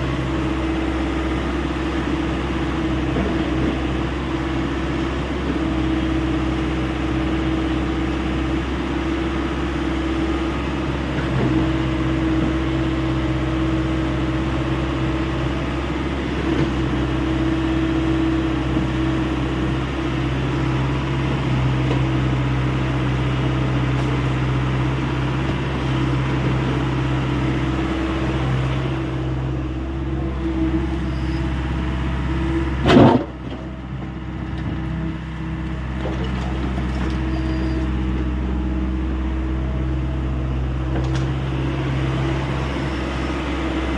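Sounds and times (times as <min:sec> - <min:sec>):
excavator diesel engine running: 0:00.0 - 0:43.9
hydraulic hum: 0:18.6 - 0:43.9.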